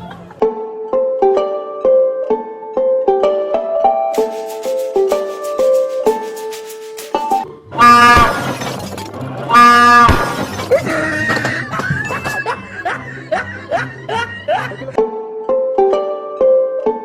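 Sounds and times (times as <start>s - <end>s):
train horn blasts: 7.8s - 8.4s, 9.5s - 10.2s.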